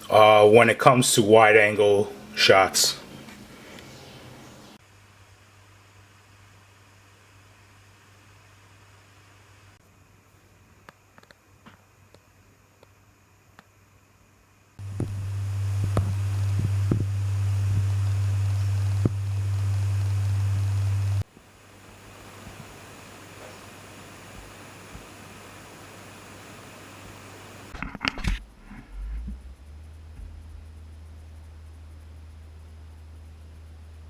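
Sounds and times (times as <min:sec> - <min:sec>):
low even hum: 0:00.0 - 0:10.7, 0:14.8 - 0:34.0
steady hiss: 0:00.0 - 0:34.0
hiss: 0:14.8 - 0:27.7.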